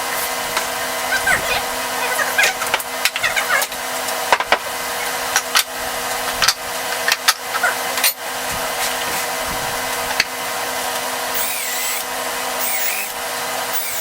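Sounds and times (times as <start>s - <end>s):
power tool motor humming: 0.0s - 3.9s, 8.1s - 14.0s.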